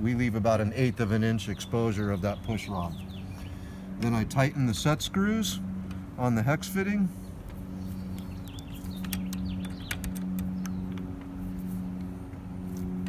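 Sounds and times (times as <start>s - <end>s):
steady low hum: 0.0s - 13.0s
tool clicking and tapping on metal: 7.4s - 11.4s.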